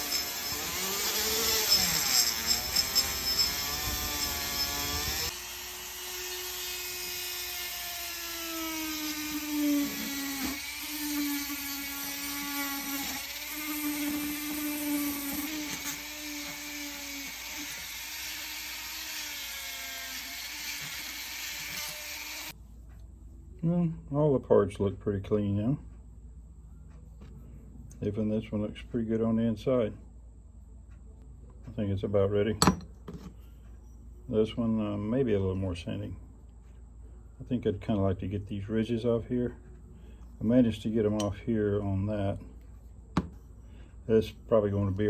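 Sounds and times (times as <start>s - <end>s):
power tool on metal: 0.0s - 22.5s.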